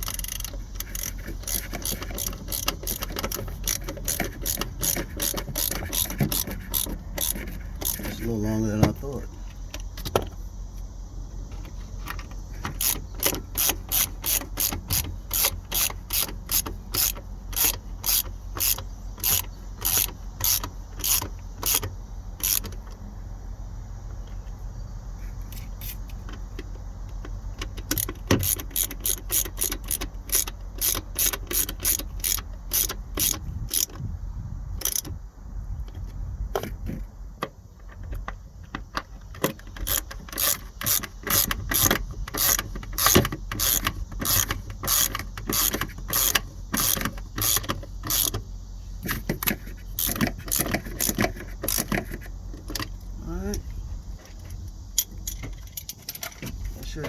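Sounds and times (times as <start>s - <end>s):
ratchet wrench clicking: 0.0s - 8.2s, 12.7s - 22.8s, 27.7s - 34.0s, 34.8s - 35.2s, 39.6s - 48.4s, 49.0s - 53.0s
steady low hum: 0.0s - 57.0s.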